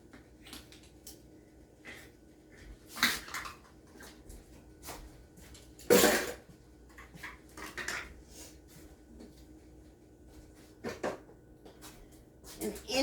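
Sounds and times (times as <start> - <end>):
kitchen utensils clattering: 5.9 - 6.4.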